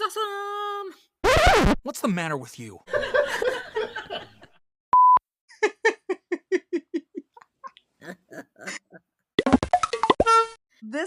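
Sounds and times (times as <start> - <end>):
person laughing: 5.5 - 9.1.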